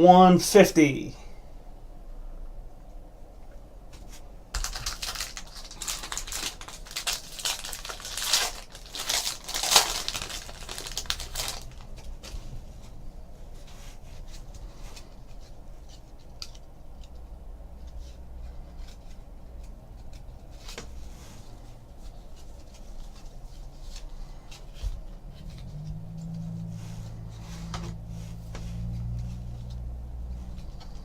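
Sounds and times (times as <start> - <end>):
low steady hum: 0.0 - 31.0
cards clicking and rustling: 4.0 - 12.4.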